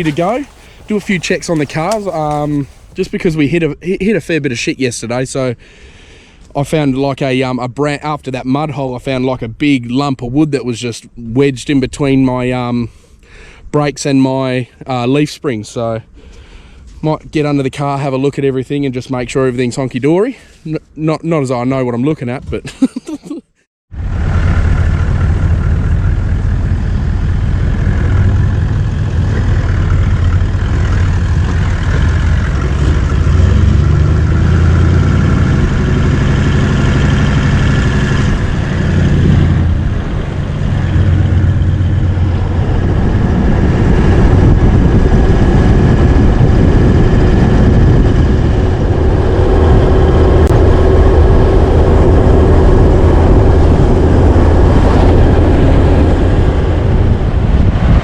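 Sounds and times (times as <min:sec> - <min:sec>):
vehicle engine and tyres rumbling: 0:00.0 - 0:03.6, 0:23.9 - 0:58.0.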